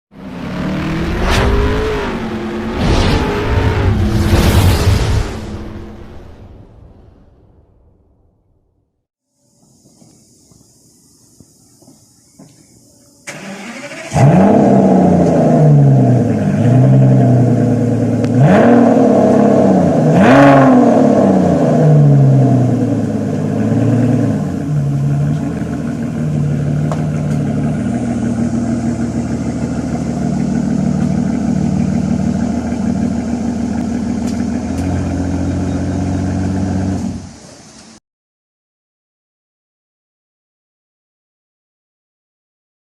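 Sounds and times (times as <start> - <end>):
engine revving: 0.1 - 6.4, 13.3 - 37.4
sports car engine starting: 13.2 - 37.6
engine idling: 22.8 - 37.7.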